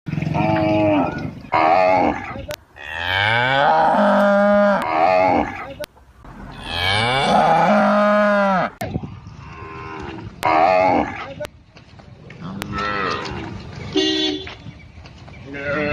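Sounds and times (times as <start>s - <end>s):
calf mooing: 0.3s - 5.7s, 6.5s - 8.8s, 15.5s - 15.9s.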